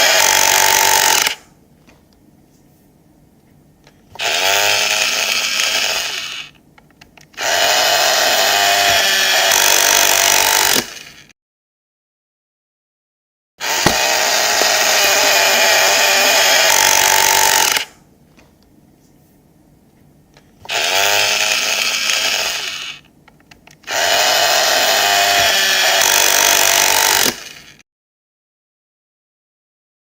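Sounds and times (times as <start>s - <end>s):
power drill running: 0.0s - 1.4s, 4.1s - 6.6s, 7.3s - 11.3s, 13.6s - 18.0s, 20.6s - 23.1s, 23.8s - 27.8s.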